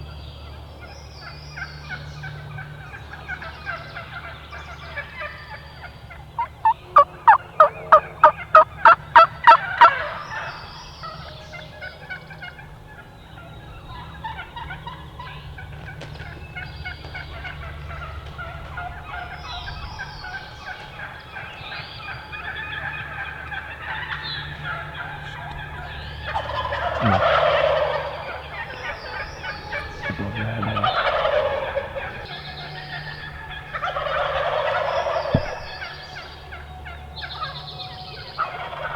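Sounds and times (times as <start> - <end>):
turkey gobbles: 5.9 - 11.2, 13.9 - 37.6
turkey yelps: 6.1 - 38.9.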